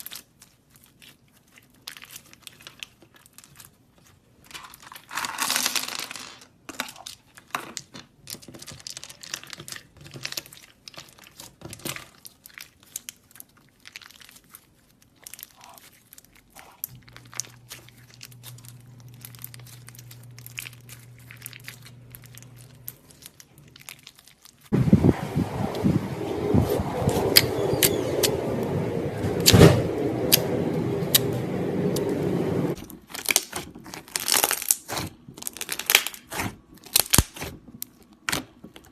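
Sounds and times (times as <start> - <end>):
slime crackling and popping: 6.9 - 24.7, 32.8 - 38.9
low hum: 24.7 - 32.8.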